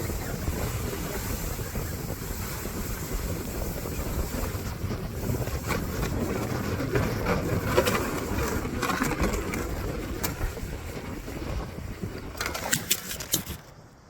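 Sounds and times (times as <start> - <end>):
wind rumbling on microphone: 0.0 - 14.0
sharp clicks and crunches: 12.2 - 13.8.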